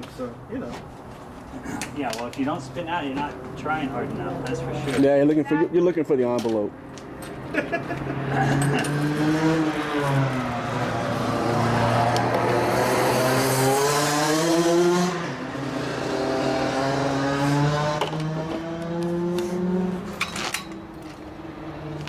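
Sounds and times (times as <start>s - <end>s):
go-kart engine racing: 6.8s - 22.0s.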